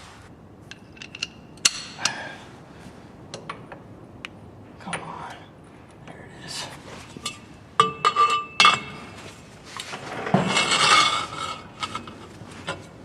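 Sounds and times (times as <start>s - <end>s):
metal tools clinking and clanking: 7.2s - 9.2s
metal scraping rattle: 7.2s - 12.9s
ringing metallic knocks: 7.8s - 9.0s.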